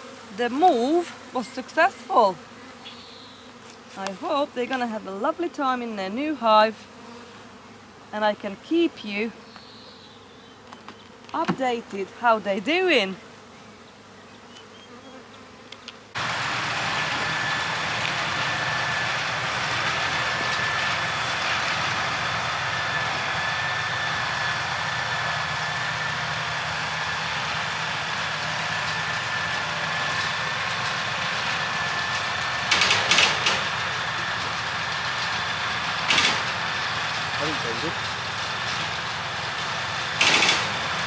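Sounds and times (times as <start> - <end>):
high whine: 16.2 - 41.0
machine engine running: 16.2 - 41.0.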